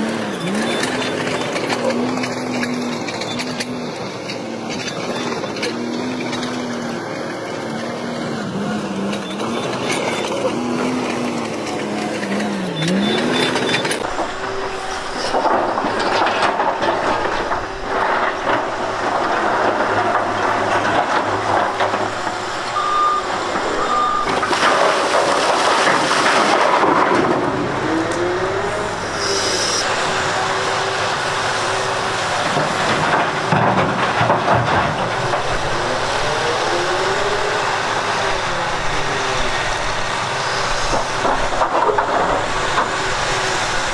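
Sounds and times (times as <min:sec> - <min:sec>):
clattering mechanical noise: 0:00.0 - 0:43.9
diesel engine revving: 0:00.0 - 0:43.9.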